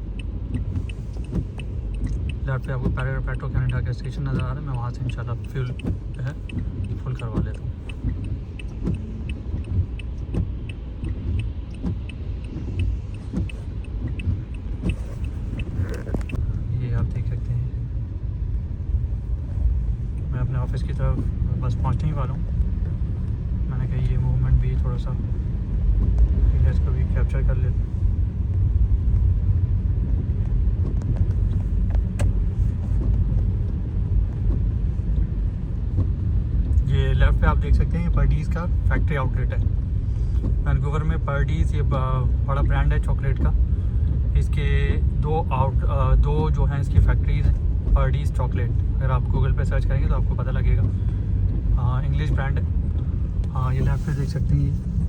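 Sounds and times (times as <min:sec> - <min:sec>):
car rumble on snowy road: 0:00.0 - 0:55.0
turn signal clicking: 0:00.0 - 0:55.0
soft sweep: 0:50.8 - 0:55.0.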